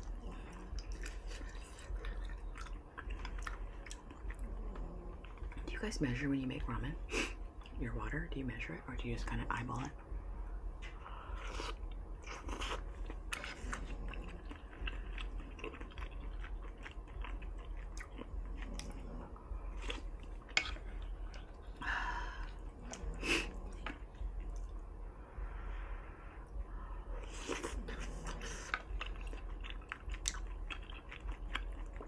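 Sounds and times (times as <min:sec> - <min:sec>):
chewing food with mouth clicks: 0:00.0 - 0:06.1, 0:10.8 - 0:21.8, 0:22.4 - 0:24.9, 0:27.2 - 0:32.0.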